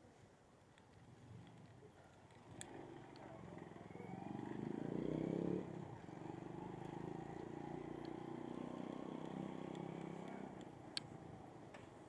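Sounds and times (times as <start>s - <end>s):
small engine running: 3.3s - 10.6s.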